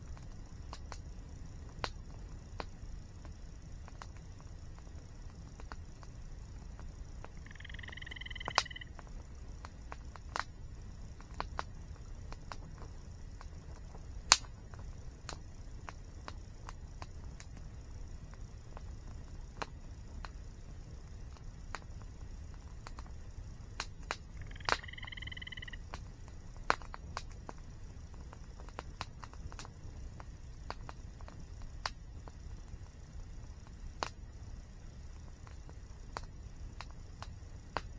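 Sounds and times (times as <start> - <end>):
campfire crackling and popping: 0.0 - 37.9
bird call: 7.4 - 8.9, 24.3 - 25.8.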